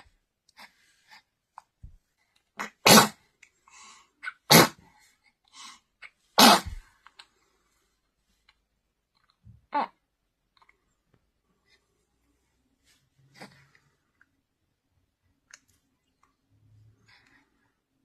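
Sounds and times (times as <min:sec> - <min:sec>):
baby sneezing: 0:02.6 - 0:03.3, 0:04.2 - 0:04.9, 0:06.4 - 0:06.8.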